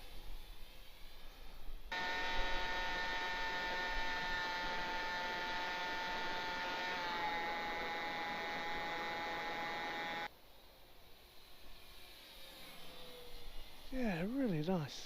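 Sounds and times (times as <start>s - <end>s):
model plane motor whining: 1.9s - 10.3s.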